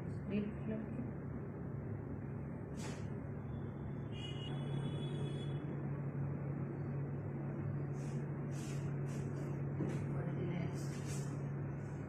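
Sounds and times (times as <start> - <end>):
machinery hum and rumble: 0.0 - 12.0.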